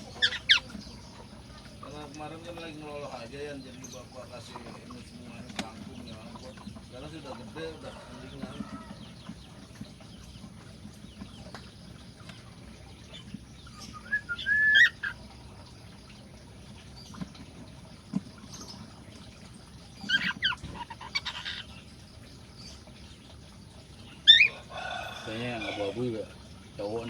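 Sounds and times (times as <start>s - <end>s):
shrill bird calls and squawks: 0.0s - 1.7s, 13.0s - 15.7s, 19.8s - 21.9s, 24.0s - 25.9s
faint bird chirping: 0.0s - 27.0s
cockatiel whistled call: 13.8s - 15.1s.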